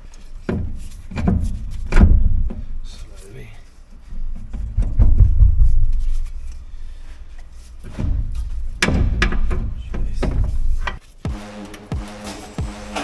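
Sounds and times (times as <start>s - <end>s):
hand tools knocking on metal: 4.3s - 12.6s.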